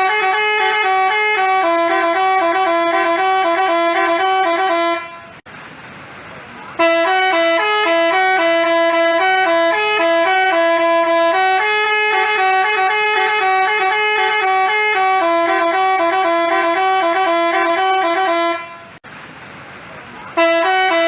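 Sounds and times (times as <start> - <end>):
multi-tone bus horn playing a tune: 0.0 - 5.4, 6.7 - 19.0, 20.3 - 21.0.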